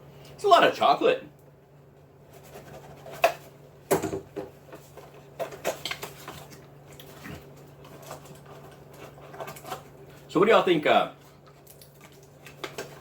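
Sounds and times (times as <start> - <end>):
eating chocolate bar: 5.9 - 10.3.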